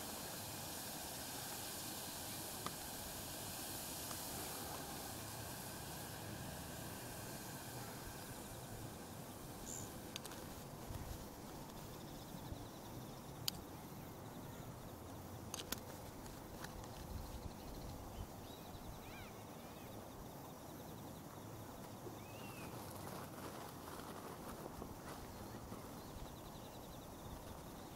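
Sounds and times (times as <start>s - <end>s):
campfire crackles: 0.0s - 13.7s, 14.8s - 17.5s, 21.8s - 27.9s
campfire hiss: 0.0s - 27.9s
faint high chirps: 22.2s - 22.8s.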